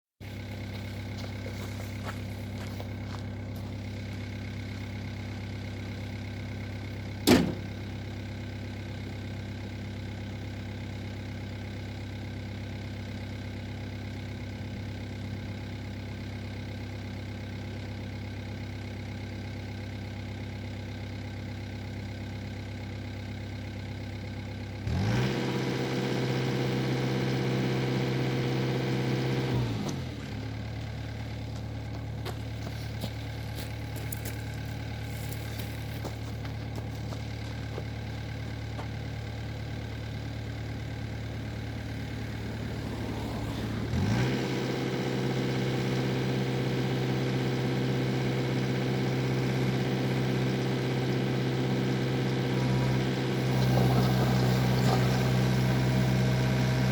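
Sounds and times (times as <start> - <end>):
excavator diesel engine idling: 0.2 - 56.9.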